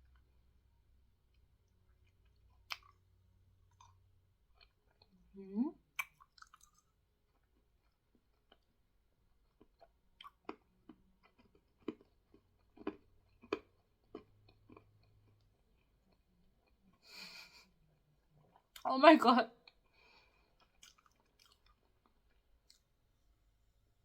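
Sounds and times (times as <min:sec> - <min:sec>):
mouth chewing fizzing candy: 0:06.0 - 0:08.6.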